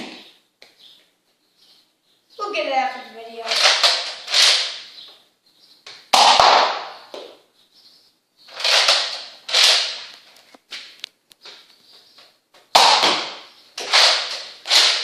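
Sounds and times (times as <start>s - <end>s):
foam-dart blaster firing: 6.1s - 7.0s, 12.8s - 15.0s.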